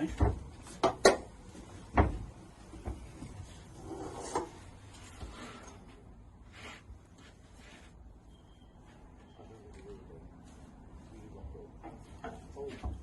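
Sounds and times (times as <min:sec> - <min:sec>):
faint rubbing and scraping: 0:02.7 - 0:13.0.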